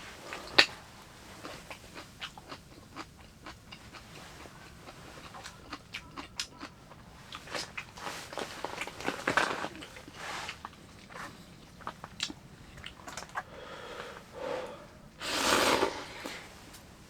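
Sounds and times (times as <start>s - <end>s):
person chewing and biting: 4.6s - 7.9s.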